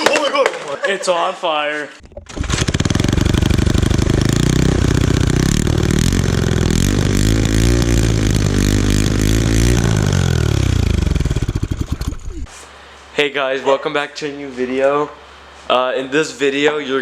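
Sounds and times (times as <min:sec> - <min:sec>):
small gasoline engine revving: 0:02.2 - 0:12.5.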